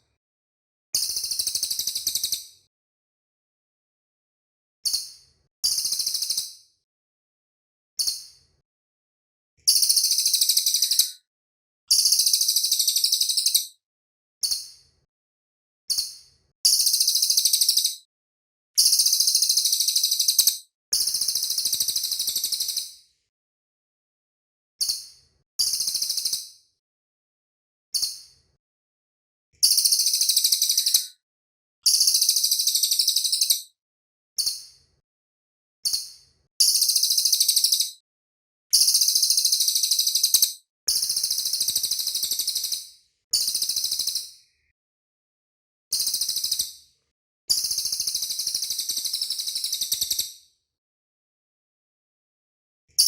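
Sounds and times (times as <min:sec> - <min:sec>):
songbird high-pitched trills: 0:09.7 - 0:11.1, 0:11.9 - 0:13.7, 0:16.7 - 0:18.0, 0:18.8 - 0:20.6, 0:29.6 - 0:31.1, 0:31.9 - 0:33.6, 0:36.6 - 0:38.0, 0:38.8 - 0:40.5.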